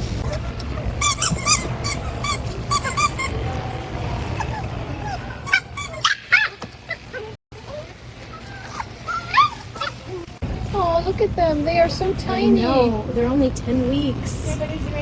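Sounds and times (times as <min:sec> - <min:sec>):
puppies whimpering and yipping: 0:00.2 - 0:10.4.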